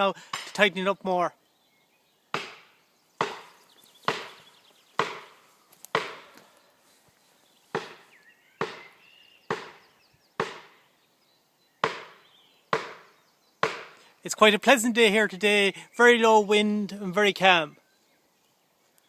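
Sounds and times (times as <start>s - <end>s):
hammer striking wedges: 2.4s - 4.4s, 5.0s - 6.3s, 7.8s - 8.0s, 8.6s - 8.9s, 9.5s - 9.8s, 10.4s - 10.8s, 11.8s - 14.0s.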